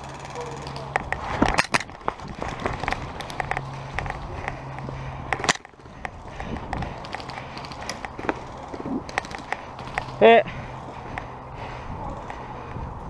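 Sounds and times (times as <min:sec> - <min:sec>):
footsteps and gear clatter: 0:00.0 - 0:13.0
sharp clicks and knocks: 0:00.6 - 0:10.1.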